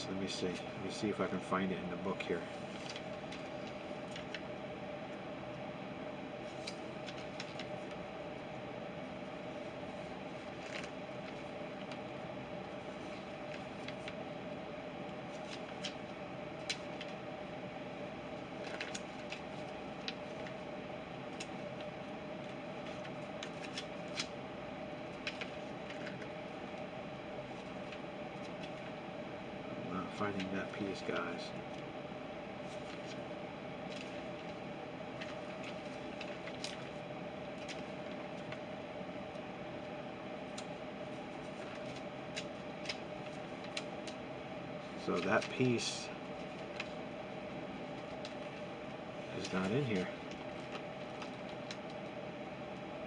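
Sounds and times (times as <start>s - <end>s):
steady background hum: 0.0s - 53.0s
booklet pages leafed through: 18.5s - 20.6s, 25.1s - 26.8s.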